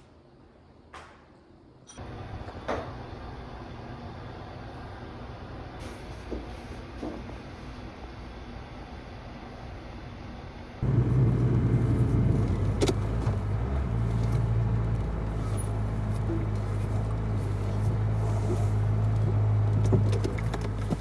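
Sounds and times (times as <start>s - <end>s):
car interior hum and rumble: 10.8s - 21.0s.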